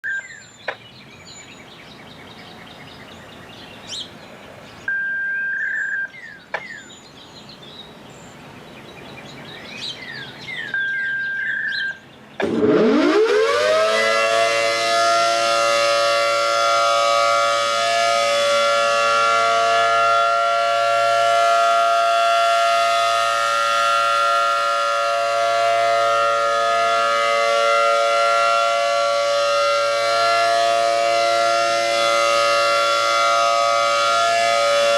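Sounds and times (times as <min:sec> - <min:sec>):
birds chirping: 0:00.0 - 0:12.8
siren winding up to a wail: 0:12.4 - 0:20.7.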